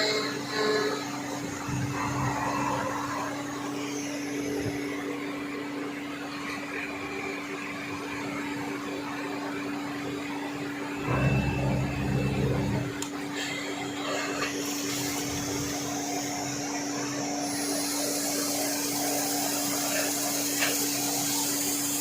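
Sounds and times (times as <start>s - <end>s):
lathe mechanical hum: 0.0s - 22.0s
low rumble: 11.0s - 13.0s
constant tone: 11.0s - 13.2s.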